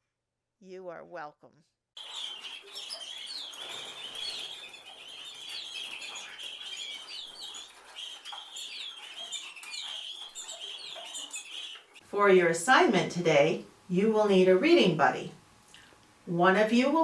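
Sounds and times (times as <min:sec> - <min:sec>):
flock of birds chirping: 0:02.0 - 0:13.5.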